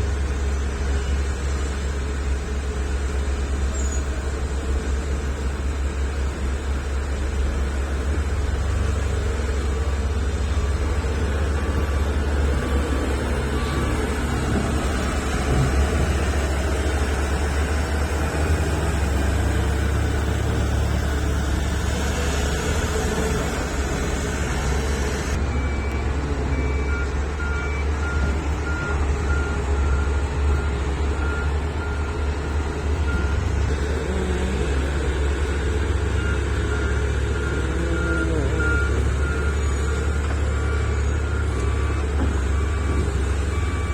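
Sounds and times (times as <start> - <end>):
diesel engines rumbling: 0.0 - 43.9
reversing alarm beeping: 10.4 - 43.9.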